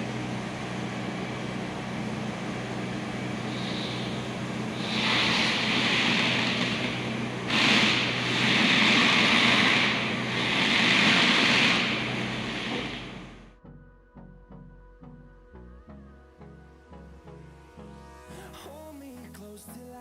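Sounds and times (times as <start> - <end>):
car engine humming and revving: 0.0 - 13.4.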